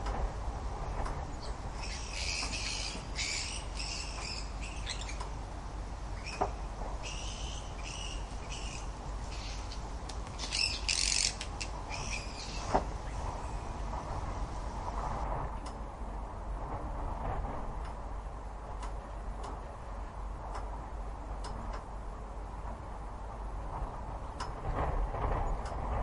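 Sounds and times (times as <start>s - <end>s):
steady low rumble: 0.0s - 26.0s
bird calls: 1.3s - 5.4s, 6.1s - 14.4s.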